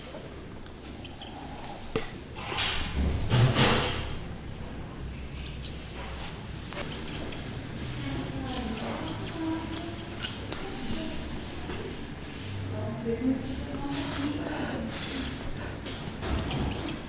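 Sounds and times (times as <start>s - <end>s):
scissors snipping hair: 1.0s - 1.4s, 5.4s - 5.8s, 6.8s - 7.5s, 8.4s - 10.6s, 15.2s - 17.0s.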